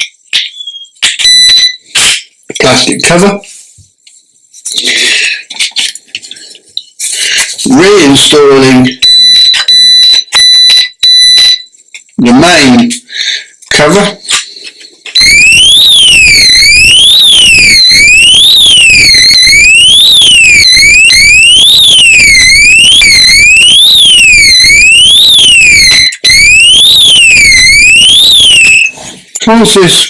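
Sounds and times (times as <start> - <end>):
alarm siren sweeping in pitch: 1.2 - 1.8, 9.0 - 11.6, 15.2 - 28.9.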